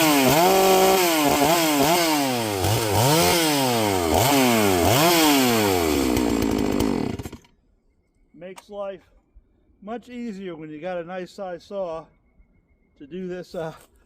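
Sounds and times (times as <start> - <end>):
chainsaw revving: 0.0 - 7.5.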